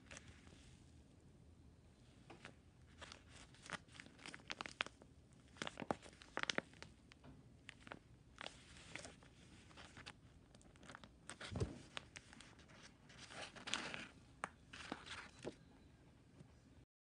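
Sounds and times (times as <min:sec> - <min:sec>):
paper rustling and crinkling: 0:02.4 - 0:07.0, 0:07.6 - 0:15.6.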